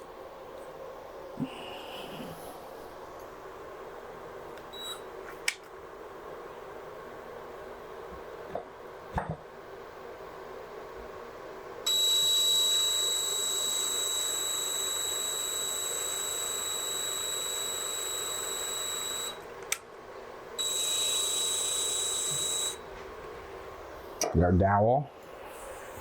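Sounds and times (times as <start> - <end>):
electric drill boring into wood: 11.9 - 19.4, 20.6 - 22.8.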